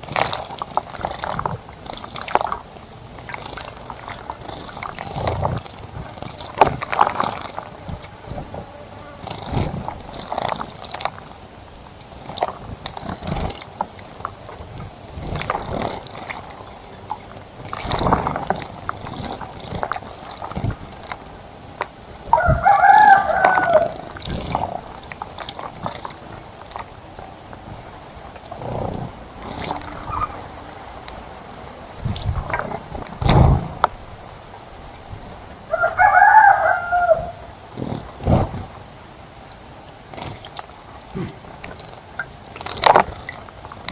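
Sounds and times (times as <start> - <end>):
long bird calls: 2.0 - 12.3, 13.1 - 39.0
knocks and low bumps: 32.0 - 34.2.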